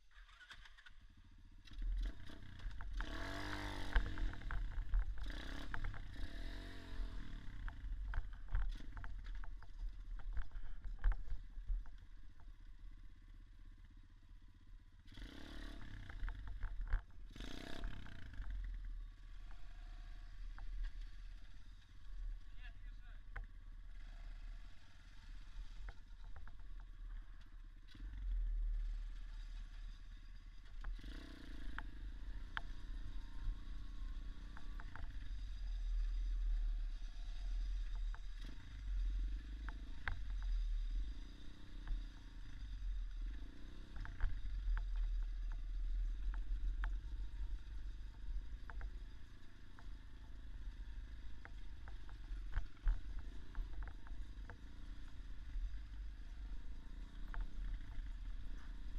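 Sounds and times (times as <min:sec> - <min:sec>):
dirt bike engine revving: 0:01.7 - 0:07.9, 0:15.0 - 0:16.6, 0:17.3 - 0:18.8, 0:30.8 - 0:46.8.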